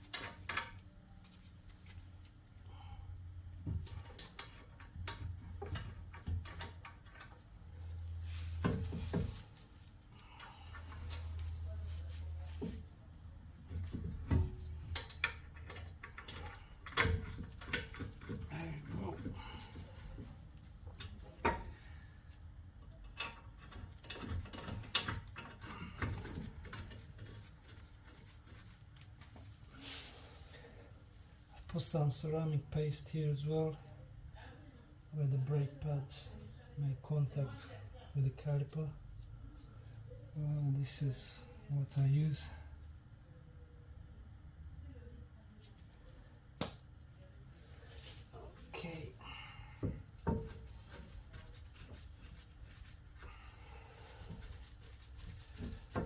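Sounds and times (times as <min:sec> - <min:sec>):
metal tools clicking and knocking: 0:00.0 - 0:01.0, 0:13.8 - 0:21.8, 0:22.8 - 0:28.2.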